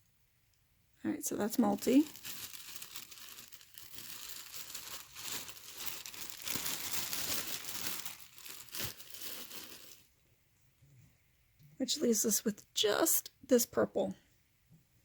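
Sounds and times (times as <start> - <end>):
plastic bag crinkling: 1.3 - 10.1.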